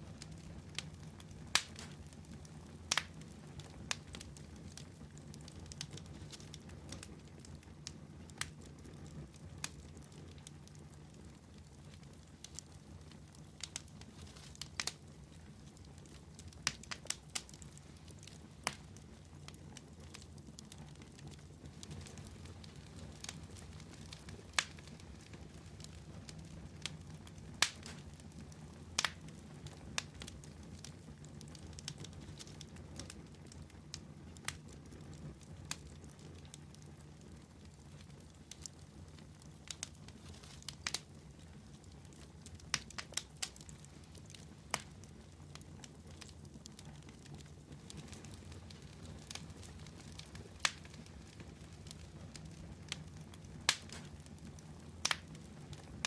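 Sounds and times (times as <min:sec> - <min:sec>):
campfire crackles and pops: 0:00.0 - 0:56.0
low hum of flame: 0:00.0 - 0:56.0.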